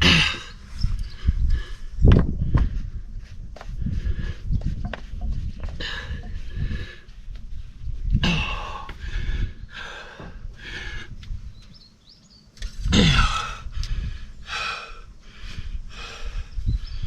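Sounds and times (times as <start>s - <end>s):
heavy huffing breaths: 0.0s - 11.6s, 12.9s - 17.0s
faint bird chirp: 0.5s - 1.4s, 11.4s - 12.8s.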